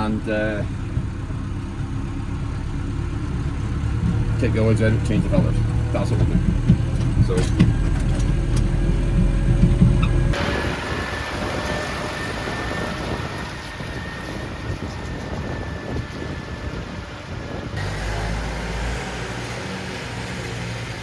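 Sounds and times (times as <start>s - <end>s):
low engine hum: 0.0s - 21.0s
tractor drive noise: 0.0s - 21.0s
thin high whine: 10.4s - 18.4s.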